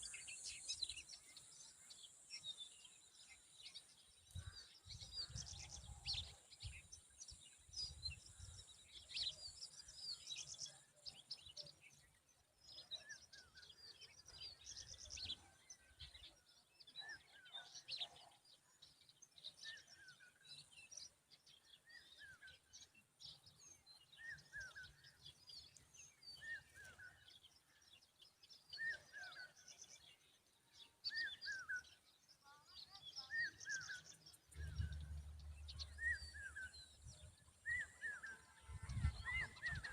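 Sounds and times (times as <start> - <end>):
bird chirping: 0.0 - 39.9
faint low rumble: 34.5 - 37.2.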